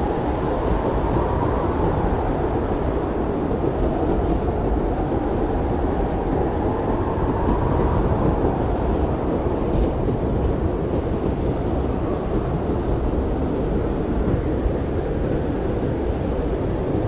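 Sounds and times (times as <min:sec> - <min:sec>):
blizzard wind blowing: 0:00.0 - 0:17.0.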